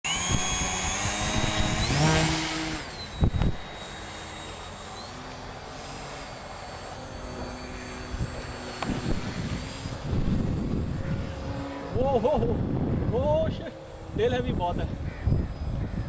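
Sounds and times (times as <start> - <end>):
electric motor whining: 0.0 - 16.0
wind rumbling on microphone: 0.1 - 3.8, 7.3 - 16.0.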